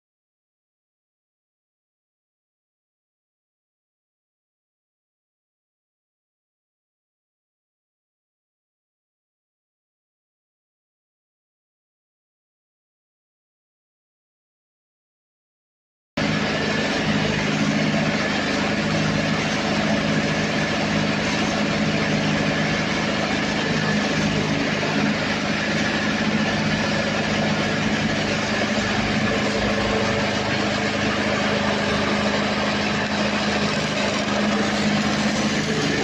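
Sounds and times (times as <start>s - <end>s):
generator diesel engine humming: 16.2s - 36.0s.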